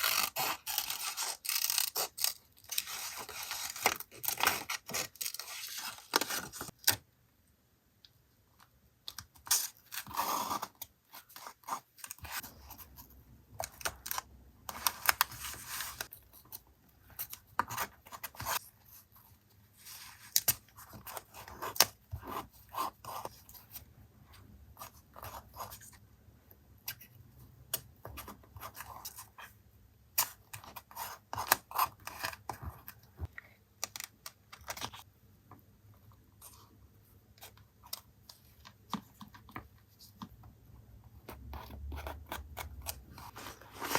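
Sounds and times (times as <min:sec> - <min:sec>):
paper rustling and sliding: 0:43.2 - 0:43.9.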